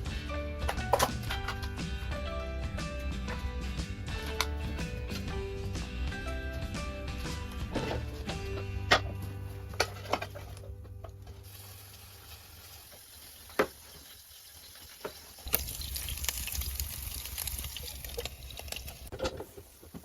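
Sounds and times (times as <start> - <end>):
water running: 11.4 - 19.8.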